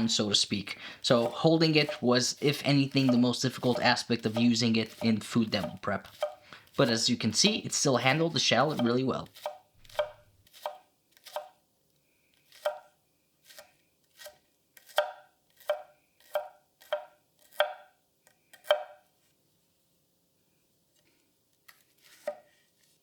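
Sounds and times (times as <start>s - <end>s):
knife cutting on cutting board: 1.1s - 7.0s, 8.7s - 11.5s.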